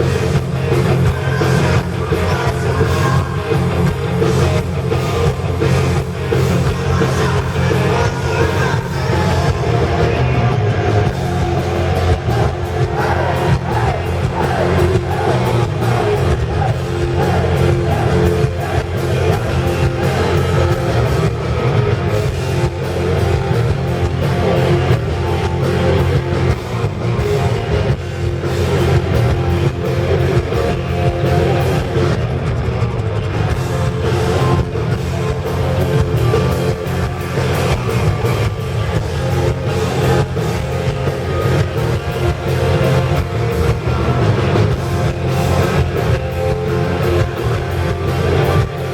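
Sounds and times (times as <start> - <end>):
live heavy metal band: 0.0 - 48.9
person singing: 0.7 - 21.4.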